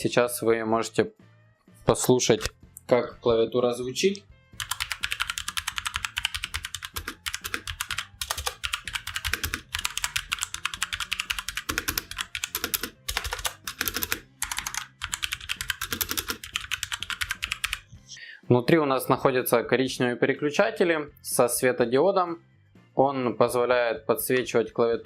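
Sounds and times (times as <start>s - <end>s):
mechanical keyboard typing: 4.6s - 17.8s.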